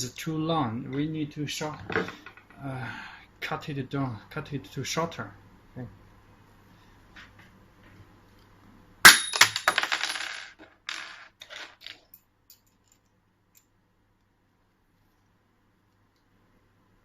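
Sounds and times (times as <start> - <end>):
small metal part clinking and rattling: 9.3 - 13.7.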